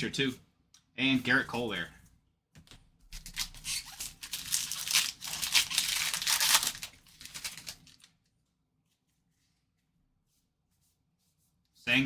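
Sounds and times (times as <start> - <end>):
wrapper crinkling and tearing: 3.2 - 8.2.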